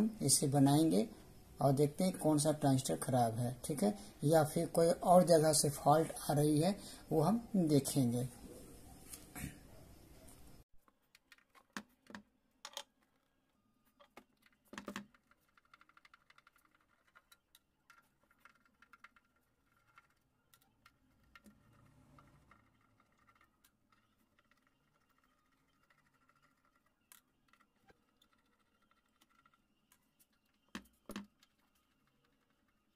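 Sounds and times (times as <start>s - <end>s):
small ticks: 13.9s - 32.9s.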